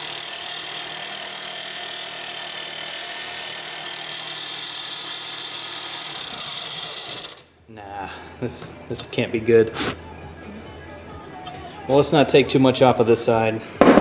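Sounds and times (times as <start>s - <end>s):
impact wrench whirring: 0.0s - 7.5s.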